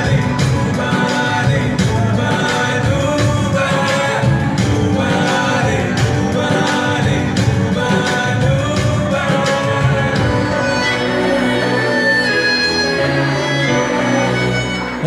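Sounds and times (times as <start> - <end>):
steady drum beat: 0.0 - 11.2
band music: 0.0 - 15.0
person singing: 0.0 - 15.0.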